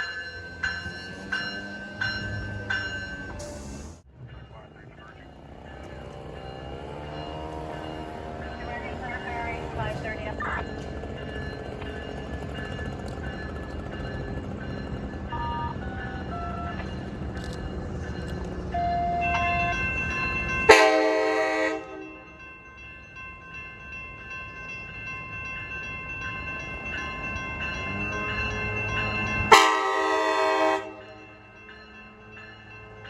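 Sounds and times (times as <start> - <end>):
train rumbling: 0.0 - 33.0
locomotive air horn blasts: 20.7 - 22.2, 29.5 - 31.1.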